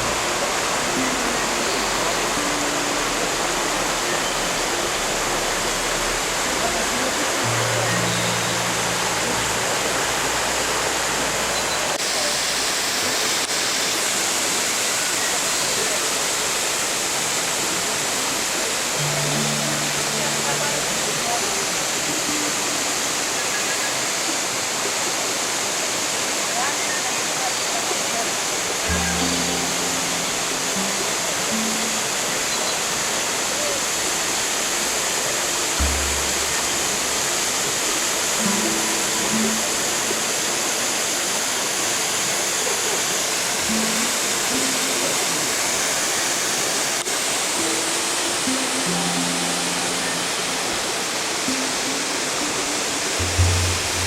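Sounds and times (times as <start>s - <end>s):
soft low held music notes: 0.0s - 12.0s, 17.8s - 23.3s, 28.8s - 41.4s, 43.6s - 54.0s
waterfall roaring: 0.0s - 54.0s.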